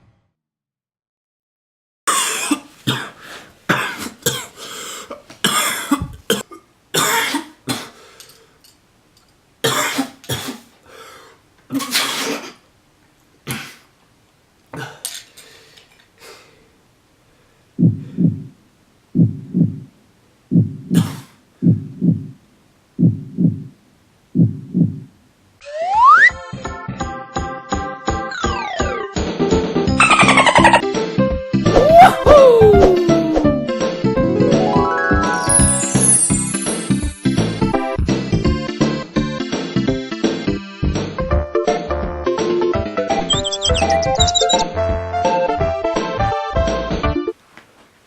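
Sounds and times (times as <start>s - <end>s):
person coughing and hacking: 2.1s - 4.6s, 5.4s - 8.0s, 9.6s - 10.7s, 20.9s - 21.3s
short low muffled pulses: 21.6s - 22.4s.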